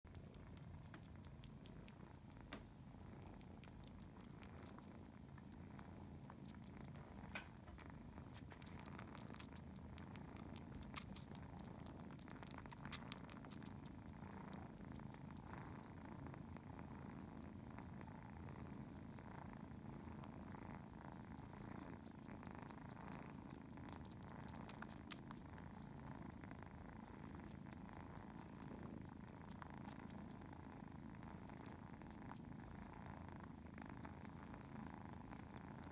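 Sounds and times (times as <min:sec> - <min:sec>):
cat purring softly: 0:00.0 - 0:35.9.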